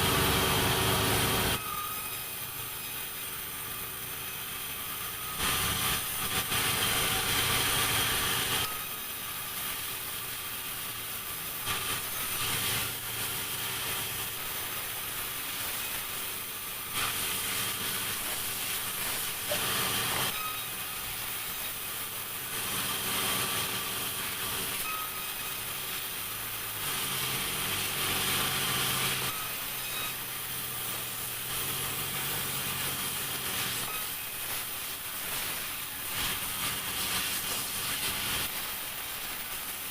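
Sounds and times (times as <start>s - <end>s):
saw cutting timber: 0.0s - 39.6s
sawmill saw running: 0.0s - 39.9s.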